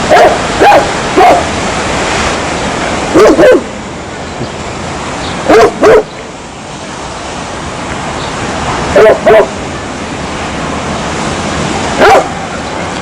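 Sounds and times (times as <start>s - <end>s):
steady background hiss: 0.0s - 13.0s
dog barking: 0.1s - 1.5s, 3.1s - 3.6s, 5.5s - 6.1s, 8.9s - 9.6s, 12.0s - 12.3s.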